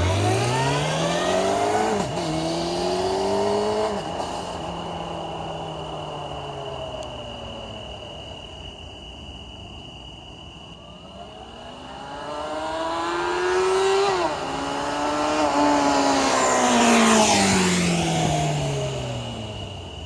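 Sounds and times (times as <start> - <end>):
motorcycle accelerating past: 0.0 - 4.8, 11.9 - 19.8.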